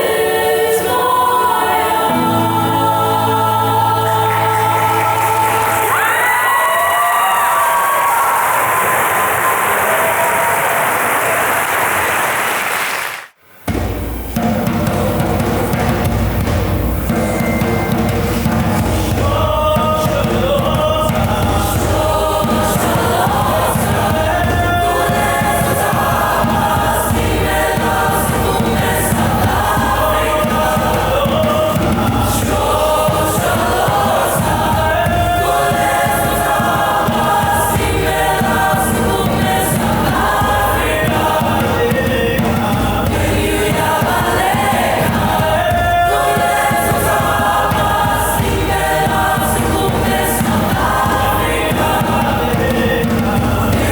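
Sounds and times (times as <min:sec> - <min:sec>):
choir singing in parts: 0:00.0 - 0:10.7, 0:14.4 - 0:53.9
accompaniment with steady beat: 0:13.7 - 0:53.9.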